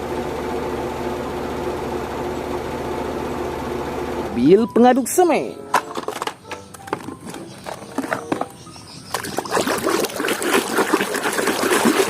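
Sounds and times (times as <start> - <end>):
water splashing over toy: 9.1 - 12.0.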